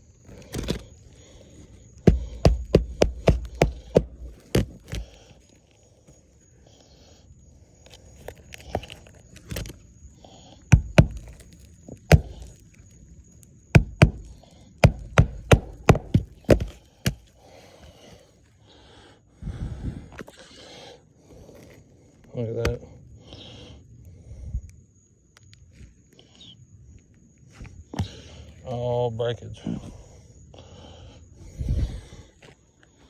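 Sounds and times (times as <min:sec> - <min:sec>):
sharp knocks: 0:02.0 - 0:05.0, 0:10.7 - 0:11.3, 0:12.1 - 0:12.5, 0:13.8 - 0:17.2.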